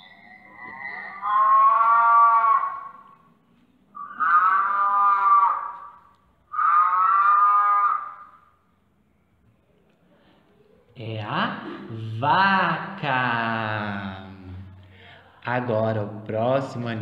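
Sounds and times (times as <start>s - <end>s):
cow mooing: 4.0s - 5.9s.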